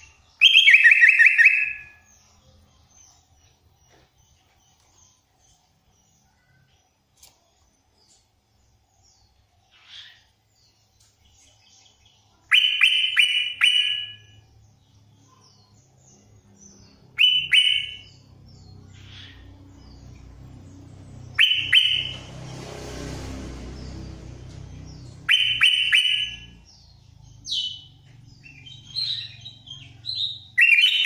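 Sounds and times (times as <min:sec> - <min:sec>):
bird singing sharp notes: 0:00.0 - 0:02.2, 0:15.2 - 0:22.5, 0:23.8 - 0:31.0.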